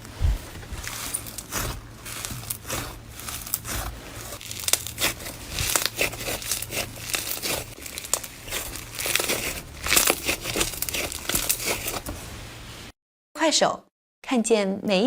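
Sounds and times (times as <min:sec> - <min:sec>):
slime crackling when squeezed: 0:00.9 - 0:12.1.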